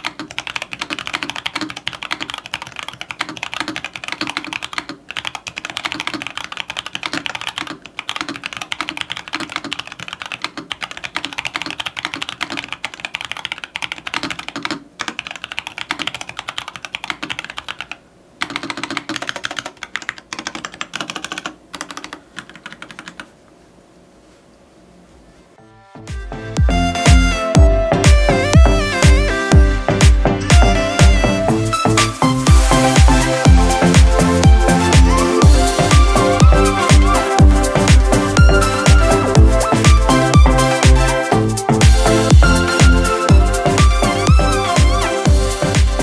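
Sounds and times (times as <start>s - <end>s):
mechanical keyboard typing: 0.0s - 23.3s, 32.5s - 46.0s.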